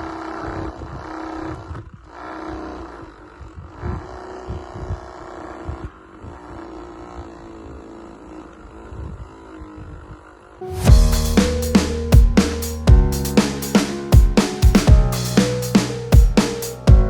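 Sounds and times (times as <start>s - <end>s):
small electric motor humming: 0.0s - 10.6s
low thumps: 10.8s - 17.0s.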